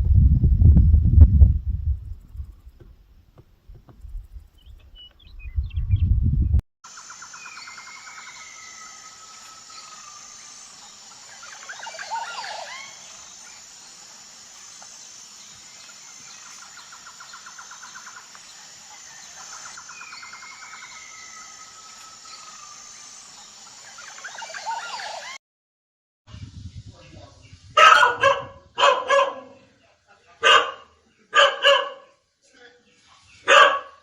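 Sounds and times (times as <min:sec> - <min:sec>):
high-pitched insect-like hiss: 0:06.9 - 0:25.4
bird-like chirps and whistles: 0:07.0 - 0:13.7, 0:18.9 - 0:25.4.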